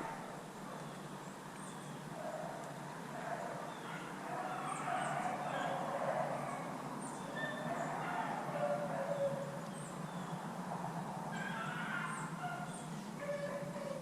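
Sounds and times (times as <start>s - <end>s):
small birds chirping: 0.0s - 14.0s
dogs baying: 2.1s - 9.6s, 10.9s - 14.0s.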